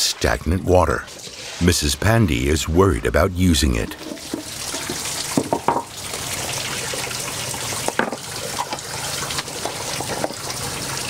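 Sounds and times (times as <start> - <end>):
water splashes: 0.0 - 11.0
water trickling from a tap: 3.8 - 11.0.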